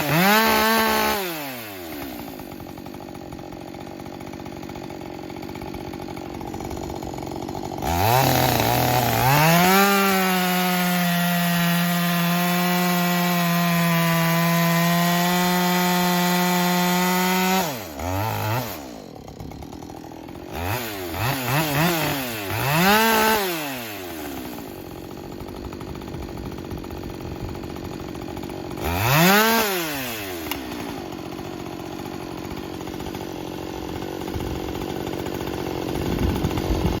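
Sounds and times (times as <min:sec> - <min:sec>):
chainsaw revving: 0:00.0 - 0:37.0.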